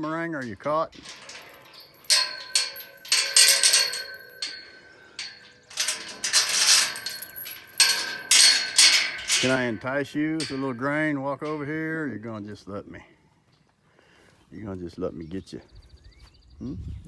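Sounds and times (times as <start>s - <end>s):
metallic rattling and clanging: 0.0s - 12.1s.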